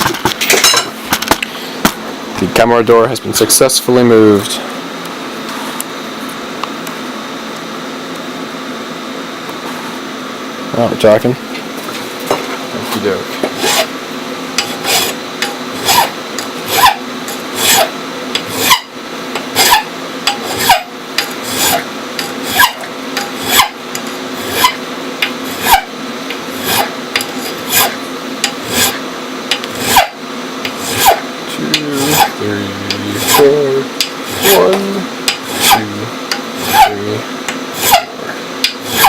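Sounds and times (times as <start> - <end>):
hand file rasping on metal: 13.6 - 13.9, 14.6 - 18.9, 19.6 - 23.8, 24.4 - 24.8, 25.5 - 25.9, 26.6 - 28.0, 28.6 - 29.0, 29.8 - 31.2, 31.9 - 33.6, 34.3 - 37.1, 37.8 - 38.1.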